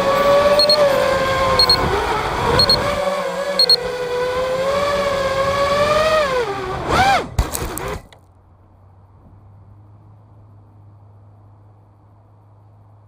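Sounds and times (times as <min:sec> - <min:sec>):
quadcopter motors whining: 0:00.0 - 0:08.2.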